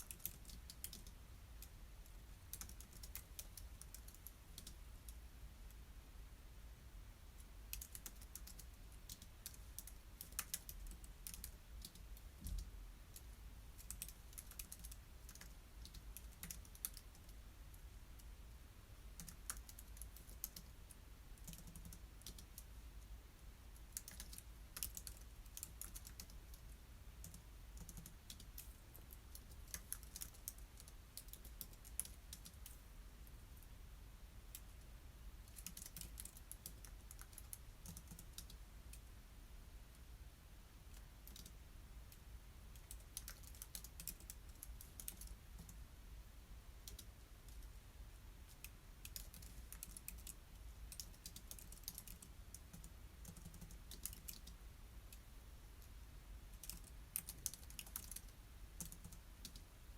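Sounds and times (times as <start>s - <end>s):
typing on a computer keyboard: 0.0s - 5.2s, 7.7s - 18.3s, 19.2s - 22.7s, 23.8s - 32.8s, 35.4s - 39.1s, 40.9s - 41.6s, 42.7s - 45.8s, 46.8s - 47.7s, 48.5s - 55.2s, 56.5s - 59.6s.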